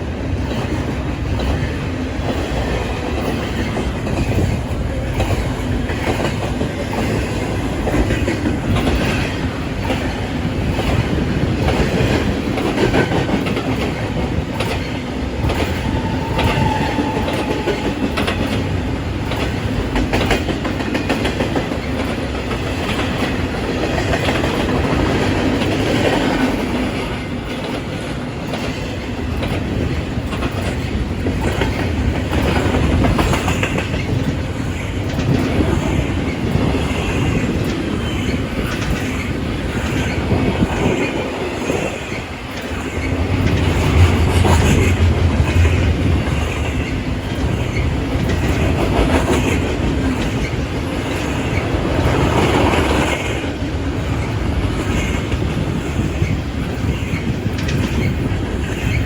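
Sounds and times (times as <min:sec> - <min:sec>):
train wheels clattering over rail joints: 0:00.3 - 0:59.0
faint squeal: 0:15.7 - 0:18.2.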